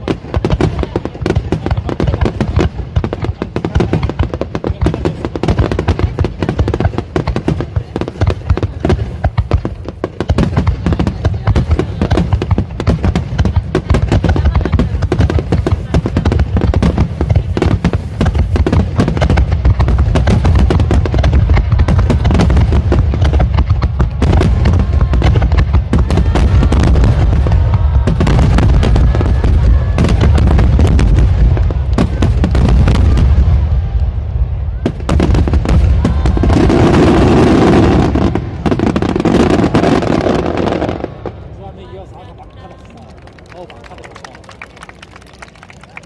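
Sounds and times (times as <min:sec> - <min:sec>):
fireworks bursting and crackling: 0:00.0 - 0:46.0
crowd cheering and applauding: 0:24.2 - 0:31.8, 0:42.4 - 0:46.0.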